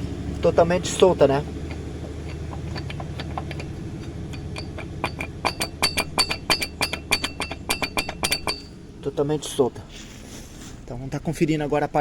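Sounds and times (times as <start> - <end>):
steady low hum: 0.0 - 12.0
metal clinking and rattling: 0.9 - 8.8.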